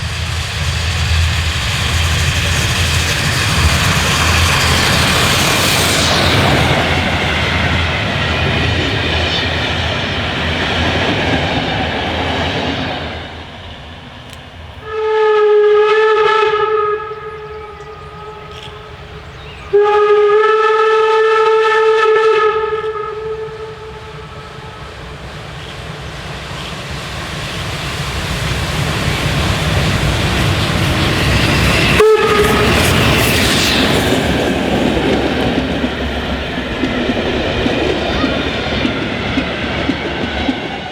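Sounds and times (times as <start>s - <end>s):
steam train rumbling on rails: 0.0s - 40.9s
train whistle blasts: 14.8s - 19.0s, 19.6s - 24.9s, 31.9s - 33.7s.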